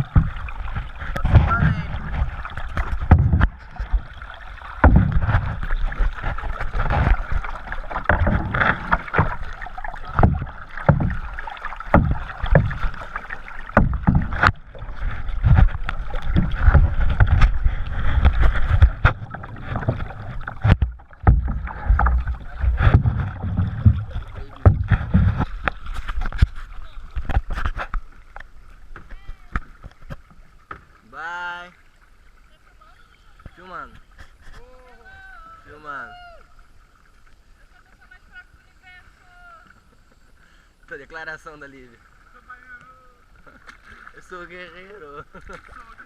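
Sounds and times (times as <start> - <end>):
knocks against boat: 0.0 - 4.0, 4.8 - 9.4, 10.1 - 13.1, 13.7 - 26.6
low thumps: 0.0 - 26.6
paddle strokes in water: 0.0 - 40.7, 41.8 - 46.0.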